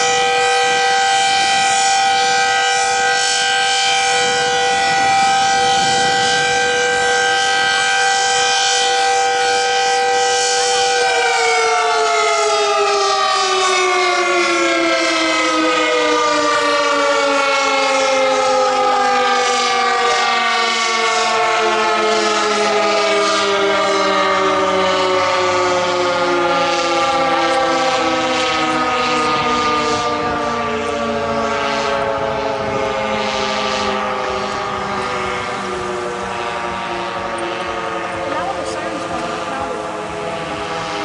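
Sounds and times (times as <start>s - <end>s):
warning siren winding down: 0.0s - 41.0s.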